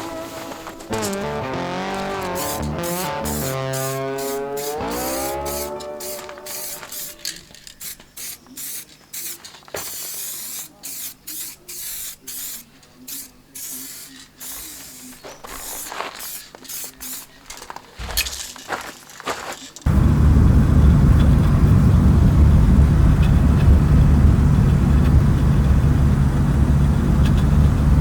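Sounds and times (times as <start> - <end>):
spray paint hissing bursts: 0.0 - 18.6.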